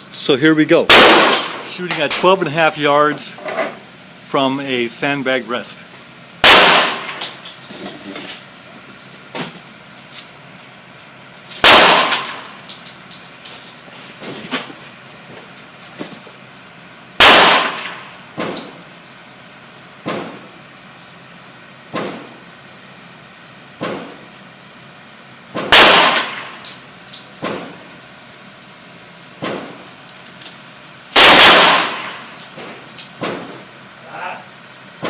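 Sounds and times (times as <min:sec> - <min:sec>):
loud revolver shots: 0:00.9 - 0:01.7, 0:06.4 - 0:07.4, 0:11.6 - 0:12.5, 0:17.2 - 0:18.6, 0:25.6 - 0:26.6, 0:31.1 - 0:32.3.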